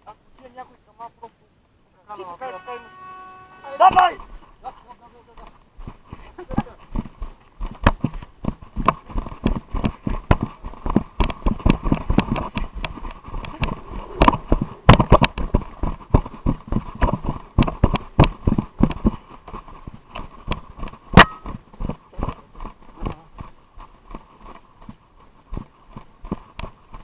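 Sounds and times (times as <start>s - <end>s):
faint steady tone: 0.0s - 4.1s, 21.2s - 21.5s
quick irregular footsteps or knocks: 3.9s - 27.0s.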